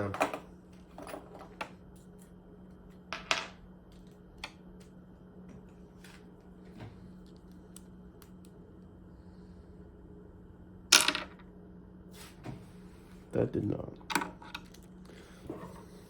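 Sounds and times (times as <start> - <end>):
steady low hum: 0.0 - 16.0.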